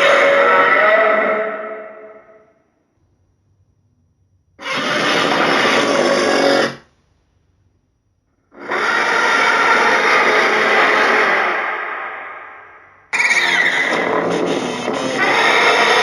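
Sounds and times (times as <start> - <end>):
harsh rasping monster roar: 0.0 - 2.2, 4.6 - 6.8, 8.6 - 12.1, 13.2 - 16.0.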